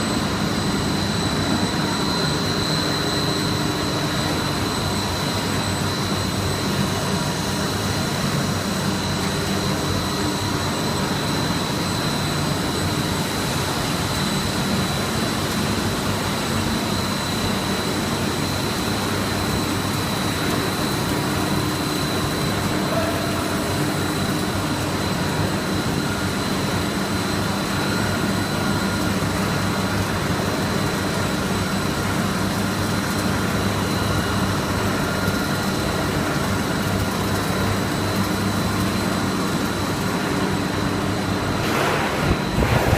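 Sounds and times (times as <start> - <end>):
machinery running with high whine: 0.0 - 42.9.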